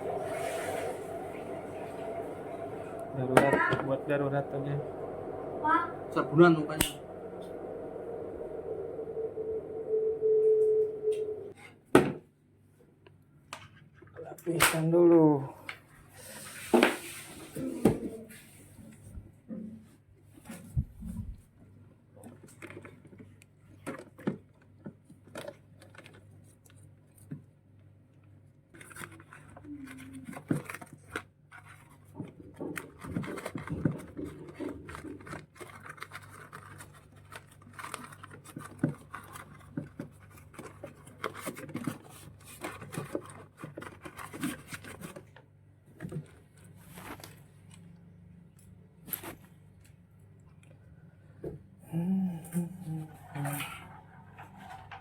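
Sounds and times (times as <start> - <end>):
steady low hum: 0.0 - 11.6.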